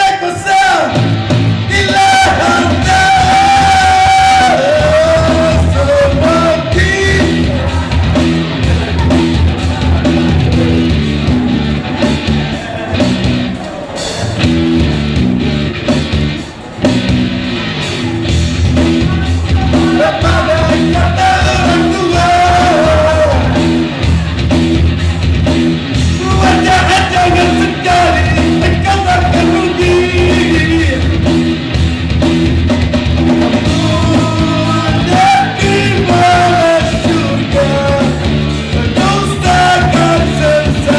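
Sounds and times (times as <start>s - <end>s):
man singing rock song: 0.0s - 11.7s, 18.0s - 24.0s, 26.0s - 31.4s, 33.1s - 40.9s
rock band playing: 0.0s - 40.9s.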